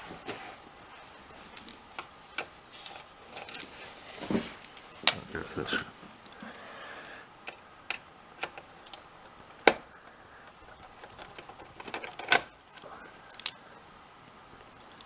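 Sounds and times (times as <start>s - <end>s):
plastic and metal parts clicking: 10.5s - 13.6s.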